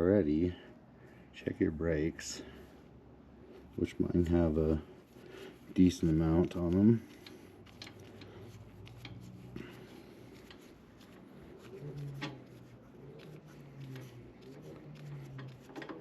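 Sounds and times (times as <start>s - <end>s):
light clicks and rubbing: 5.7s - 16.0s.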